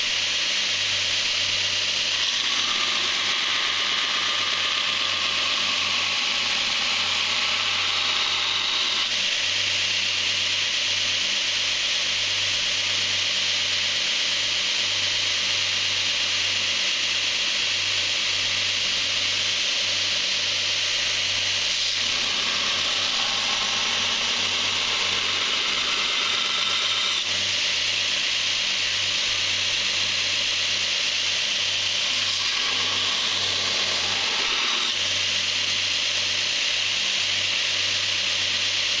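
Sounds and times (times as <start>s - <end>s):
grinder motor hum: 0.0s - 10.0s, 20.0s - 39.0s
steel grinding on belt: 2.0s - 9.1s, 21.6s - 27.4s, 31.9s - 35.1s.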